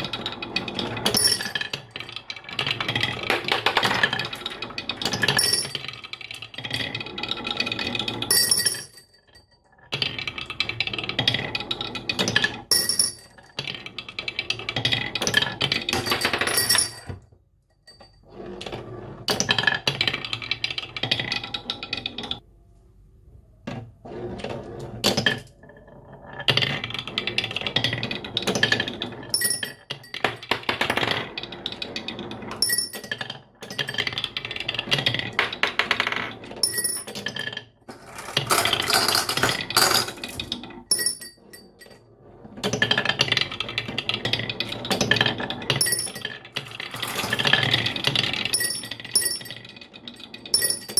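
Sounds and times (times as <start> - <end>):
marbles clattering down a run: 32.6 - 41.5, 42.6 - 50.9.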